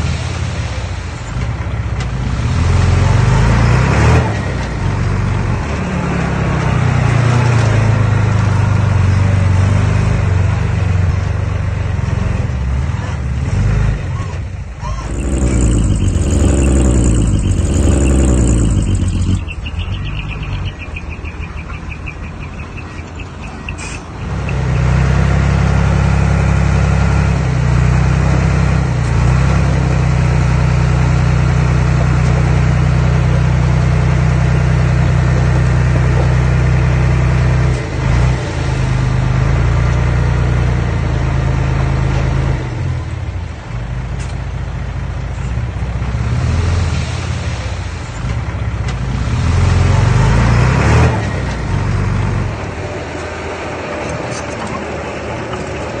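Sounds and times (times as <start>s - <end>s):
heavy machinery engine: 13.5s - 21.2s.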